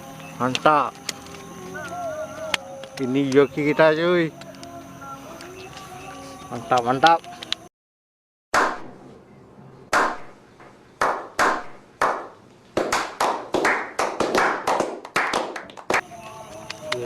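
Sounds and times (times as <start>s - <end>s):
sharp slaps or claps: 8.6s - 9.0s, 9.9s - 10.4s, 11.0s - 17.0s.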